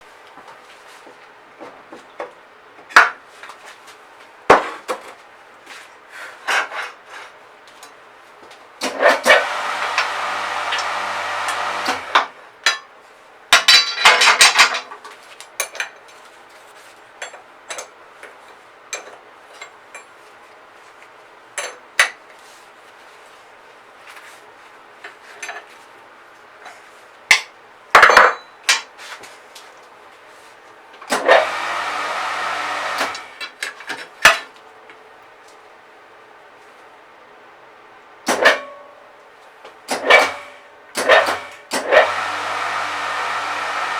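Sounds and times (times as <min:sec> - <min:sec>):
steady machine noise with hum: 0:08.9 - 0:12.7, 0:31.1 - 0:33.6, 0:39.9 - 0:43.9.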